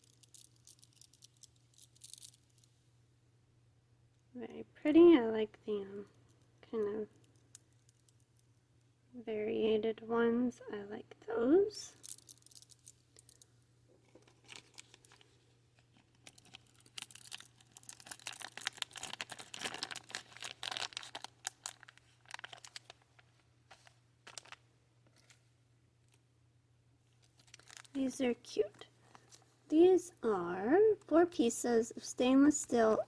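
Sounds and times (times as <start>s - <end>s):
bead packets crinkling and rustling: 0.0s - 2.7s, 11.9s - 25.4s, 27.1s - 29.6s.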